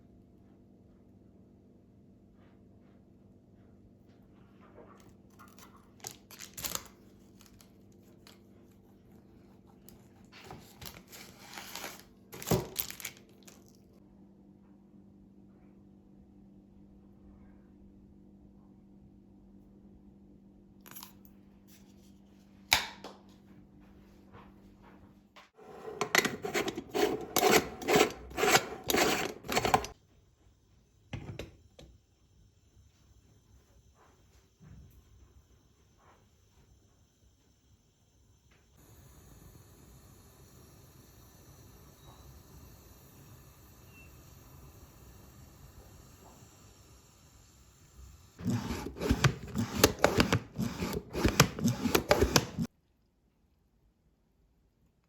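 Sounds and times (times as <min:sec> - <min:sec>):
soft scrape: 0:25.6 - 0:30.0, 0:48.4 - 0:52.7
rasping rubbing strokes: 0:25.7 - 0:29.9, 0:48.4 - 0:52.7.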